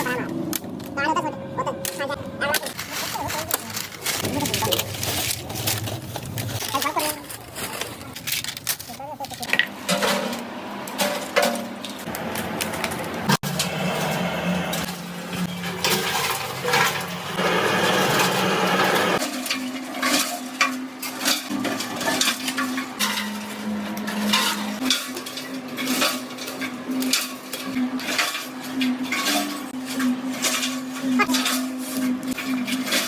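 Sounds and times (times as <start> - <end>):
steady machine hum: 0.0 - 8.2
small hard objects clattering: 2.5 - 10.4.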